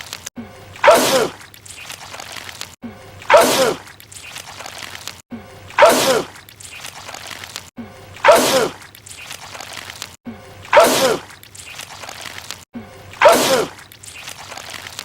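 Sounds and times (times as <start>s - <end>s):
man sneezing loudly: 5.8s - 6.3s, 8.2s - 8.8s, 10.7s - 11.3s, 13.2s - 13.8s.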